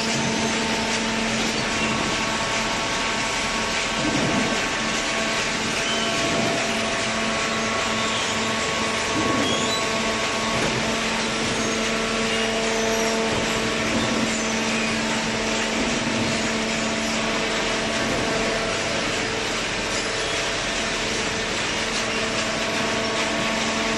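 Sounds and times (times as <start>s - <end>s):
hydraulic baler machine humming: 0.0s - 23.9s.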